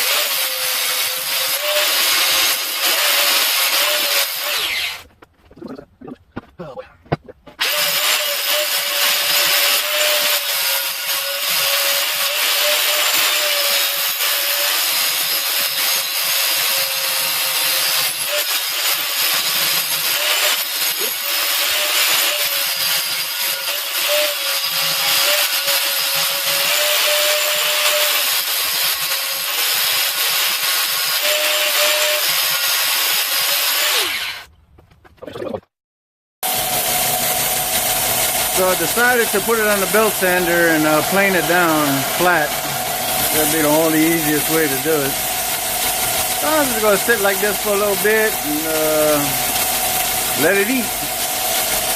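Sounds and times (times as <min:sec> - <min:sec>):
belt sander grinding steel: 0:00.0 - 0:05.2, 0:07.5 - 0:34.5, 0:36.4 - 0:51.9
sander motor winding down: 0:36.5 - 0:51.9.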